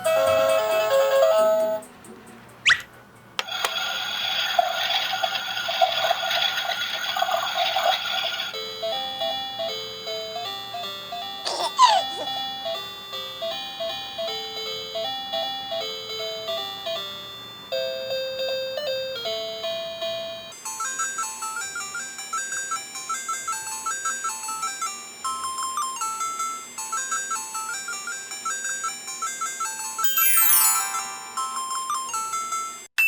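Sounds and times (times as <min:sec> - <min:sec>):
bouncy bell-like children's music: 0:00.0 - 0:01.9, 0:08.5 - 0:32.9.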